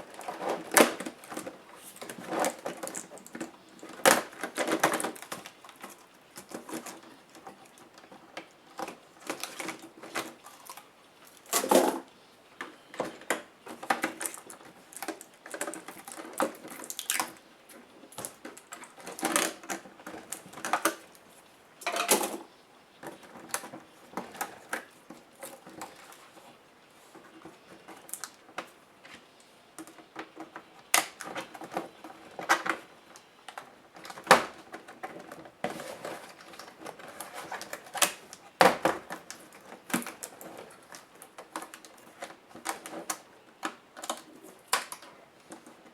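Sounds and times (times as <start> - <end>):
plastic laptop parts clicking and rattling: 0.0 - 12.0, 12.6 - 21.2, 29.8 - 45.9.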